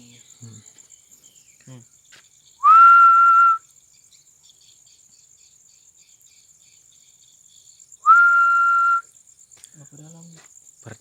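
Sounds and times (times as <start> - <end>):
crickets chirring: 0.0 - 11.0.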